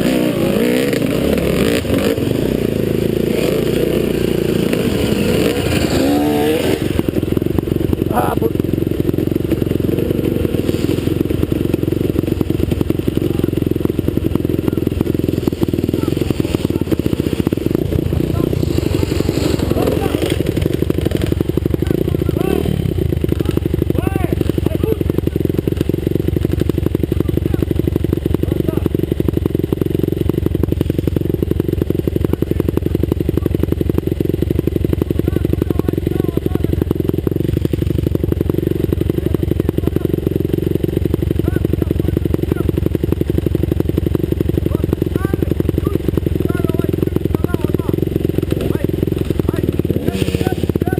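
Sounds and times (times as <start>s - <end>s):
motocross motorcycle engine running hard: 0.0s - 50.9s
bike rattling over rough ground: 1.6s - 50.9s.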